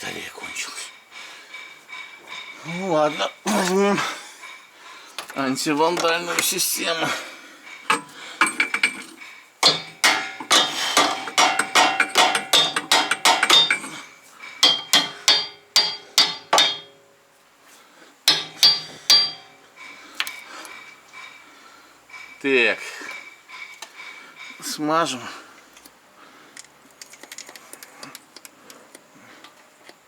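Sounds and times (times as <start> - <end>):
hammer striking steel: 7.9 - 14.0, 14.6 - 17.1, 18.3 - 19.7.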